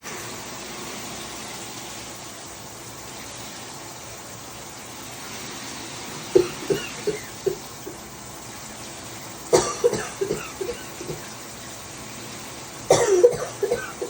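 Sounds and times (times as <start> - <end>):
steady hiss: 0.0 - 14.0
person coughing loudly: 6.4 - 7.7, 9.5 - 11.3, 12.9 - 14.0.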